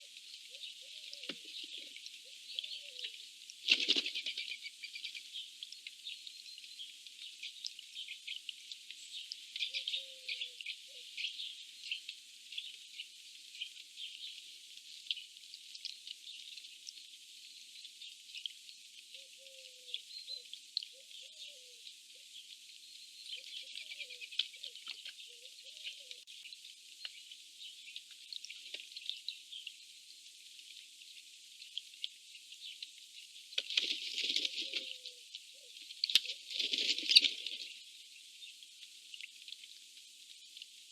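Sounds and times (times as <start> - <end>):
loud scuffle of wings: 3.7 - 4.5.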